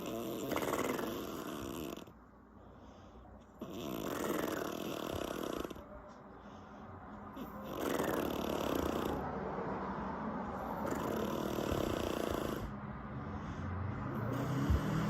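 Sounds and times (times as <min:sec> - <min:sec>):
woman snoring: 0:00.0 - 0:02.1, 0:03.6 - 0:05.8, 0:07.6 - 0:09.2, 0:10.8 - 0:12.7, 0:14.2 - 0:15.0.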